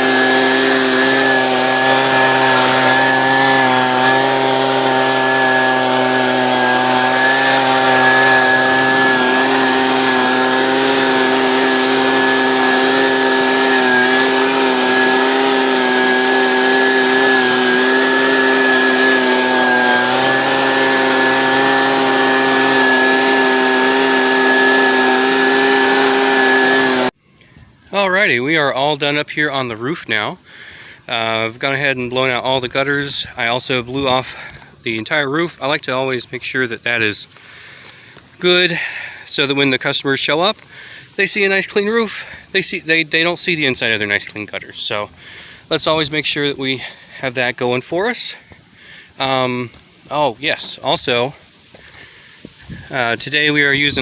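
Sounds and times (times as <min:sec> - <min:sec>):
leaf blower running: 0:00.0 - 0:27.2, 0:37.4 - 0:39.3.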